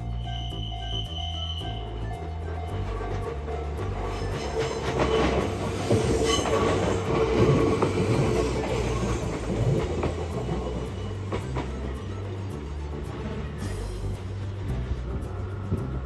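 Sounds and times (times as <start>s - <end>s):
train wheels squealing on rails: 0.0s - 16.0s.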